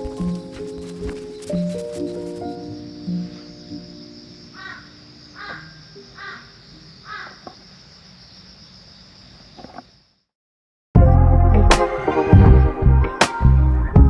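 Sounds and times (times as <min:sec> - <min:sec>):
high insect drone: 0:00.0 - 0:10.3
crow cawing: 0:04.5 - 0:07.6.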